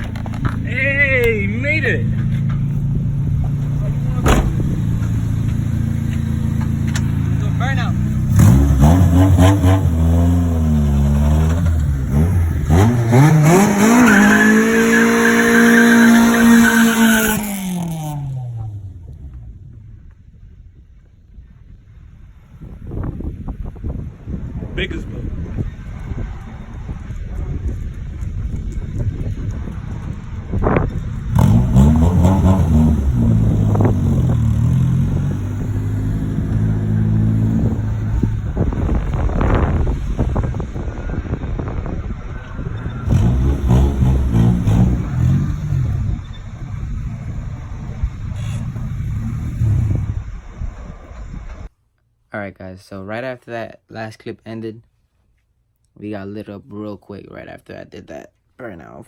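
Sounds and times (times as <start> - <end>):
car engine revving: 0.0 - 19.7, 29.5 - 51.4.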